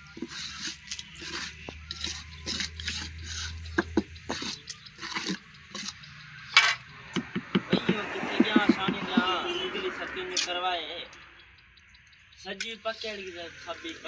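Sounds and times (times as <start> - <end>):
trowel scraping mortar: 0.0 - 6.8.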